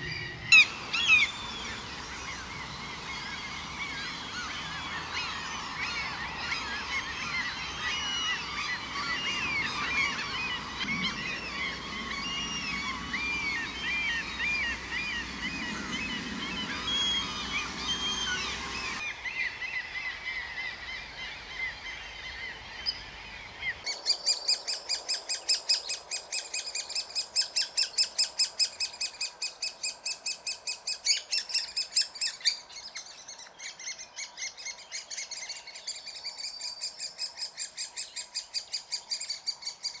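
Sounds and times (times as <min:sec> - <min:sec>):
fast run of sharp bird notes: 0:00.0 - 0:20.2
waterbirds calling: 0:00.0 - 0:40.0.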